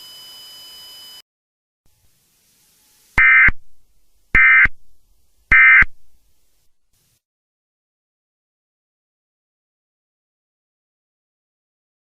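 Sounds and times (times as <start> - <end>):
digital data tone bursts: 3.2 - 3.6, 4.4 - 4.8, 5.5 - 6.0.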